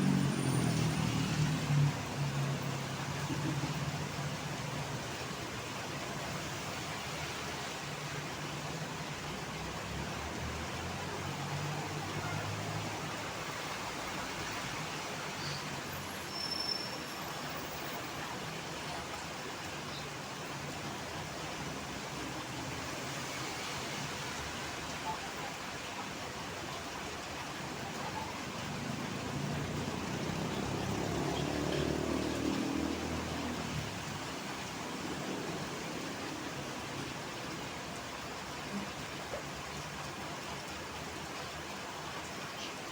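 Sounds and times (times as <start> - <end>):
louder vehicle passing: 0.0 - 3.8, 29.0 - 36.2
passing engines hum: 0.0 - 5.8, 27.1 - 39.0
rain and wet tyres hissing: 0.0 - 42.9.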